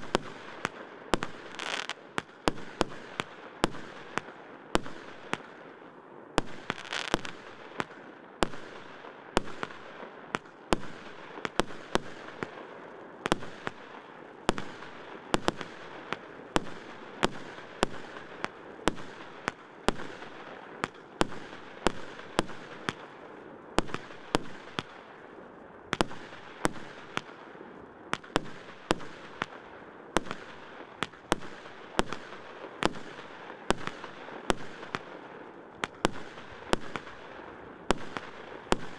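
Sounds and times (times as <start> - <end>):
firework bangs: 35.8 - 38.9.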